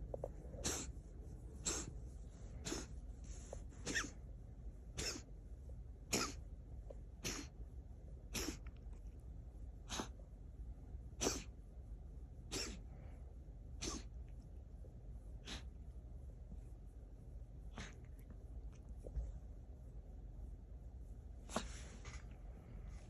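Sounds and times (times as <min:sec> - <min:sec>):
cat coughing: 0:00.6 - 0:00.9, 0:01.6 - 0:01.9, 0:02.6 - 0:02.9, 0:03.8 - 0:04.2, 0:04.9 - 0:05.3, 0:06.0 - 0:06.5, 0:07.2 - 0:07.6, 0:08.3 - 0:08.8, 0:11.2 - 0:11.5, 0:12.5 - 0:12.9, 0:13.8 - 0:14.2.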